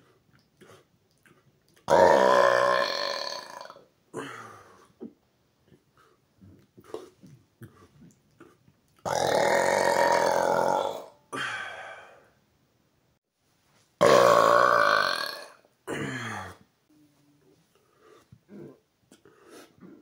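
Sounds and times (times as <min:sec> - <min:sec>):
man burping: 0:01.9 - 0:04.7, 0:09.0 - 0:11.8, 0:14.0 - 0:16.6.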